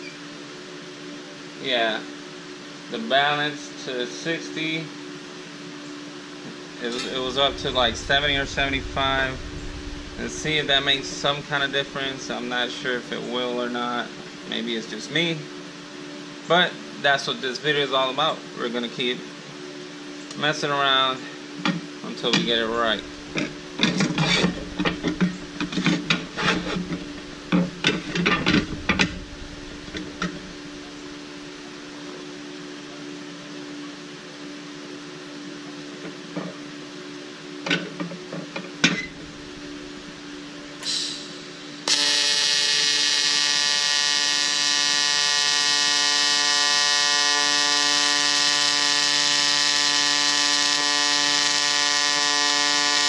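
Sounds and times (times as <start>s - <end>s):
tig arc buzzing: 6.8s - 13.0s, 22.4s - 32.0s, 38.9s - 53.0s
welder hum: 6.8s - 13.0s, 22.2s - 32.1s, 38.8s - 53.0s.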